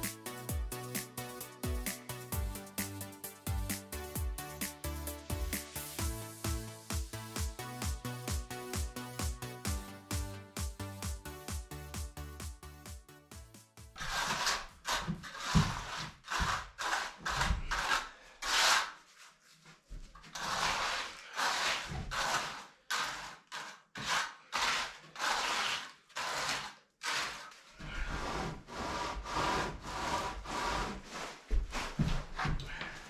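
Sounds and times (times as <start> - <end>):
hand tool rasping on wet concrete: 14.0 - 19.0, 20.4 - 30.9.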